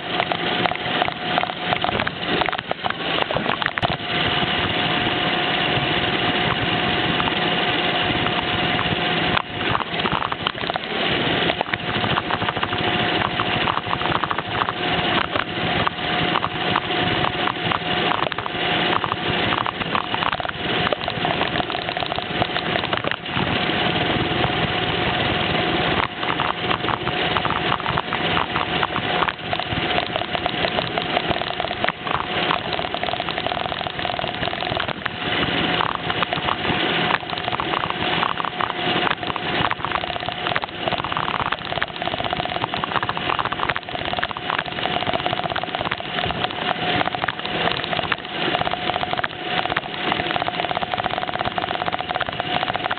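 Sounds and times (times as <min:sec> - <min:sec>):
small clicks crackling: 0:00.0 - 0:04.0, 0:08.2 - 0:23.5, 0:26.0 - 0:52.9.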